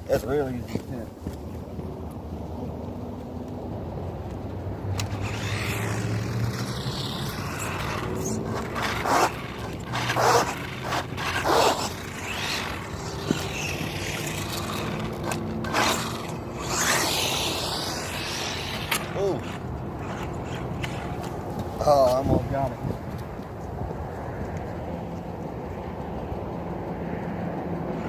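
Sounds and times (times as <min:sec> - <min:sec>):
tires scraping on asphalt: 0:00.0 - 0:25.1
electric motor whining: 0:04.9 - 0:21.7.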